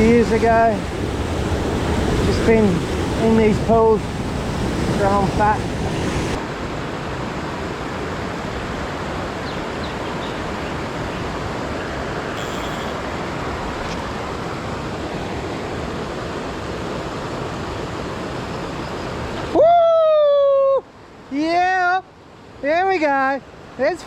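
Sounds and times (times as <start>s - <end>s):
rushing river over rapids: 0.0s - 12.4s, 13.0s - 19.7s.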